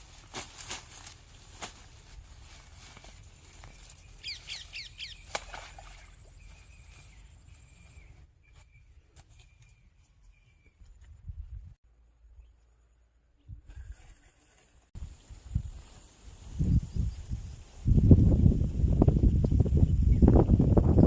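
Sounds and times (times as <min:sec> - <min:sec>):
bird chirping: 0:03.9 - 0:11.6.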